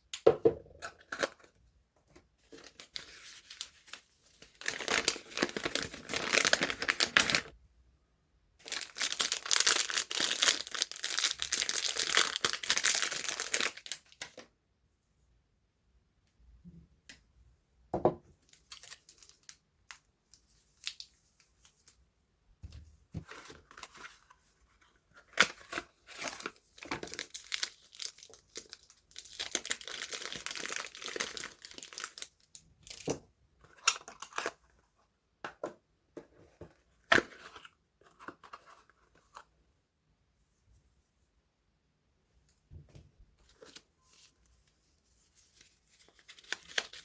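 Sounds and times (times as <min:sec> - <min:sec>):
packaging rustling: 0:02.5 - 0:07.5, 0:08.7 - 0:14.1, 0:25.3 - 0:32.3, 0:45.4 - 0:47.0
wrappers crinkling and tearing: 0:02.7 - 0:07.5, 0:08.6 - 0:14.2, 0:25.4 - 0:32.6, 0:45.4 - 0:47.0.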